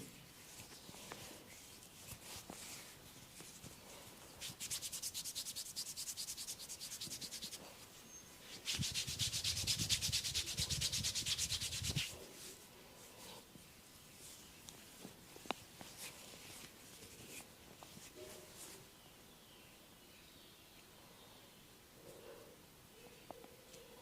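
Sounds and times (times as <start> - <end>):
hands scratching hair and scalp: 0.5 - 7.8, 8.4 - 12.6.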